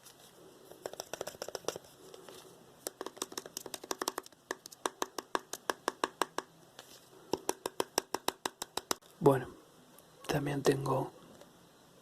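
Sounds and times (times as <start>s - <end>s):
fingers tapping on hard object: 0.8s - 1.8s, 2.8s - 6.5s, 7.3s - 9.0s.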